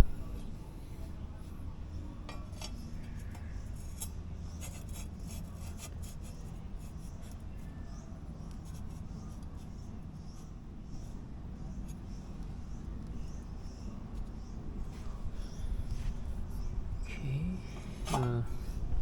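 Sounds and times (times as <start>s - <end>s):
low hum: 0.0s - 3.7s.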